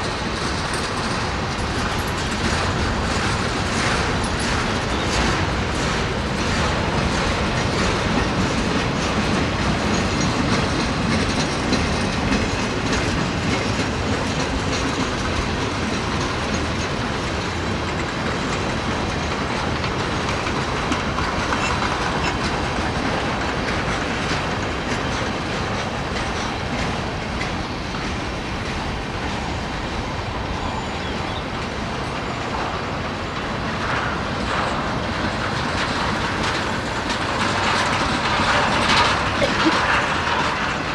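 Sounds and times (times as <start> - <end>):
freight train wheels on rails: 0.0 - 40.9.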